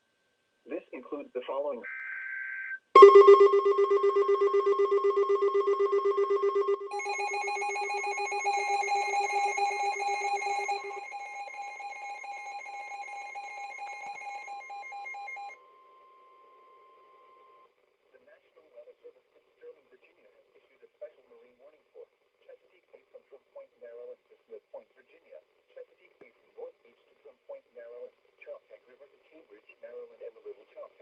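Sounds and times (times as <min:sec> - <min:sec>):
rapidly pulsing alert tone: 0:03.0 - 0:15.5.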